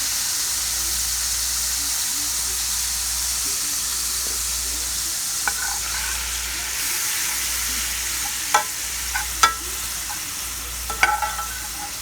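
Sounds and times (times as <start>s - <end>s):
vegetables sizzling in oil: 0.0s - 12.0s
utensil knocking against pan: 5.5s - 6.1s, 8.2s - 10.3s, 10.9s - 12.0s.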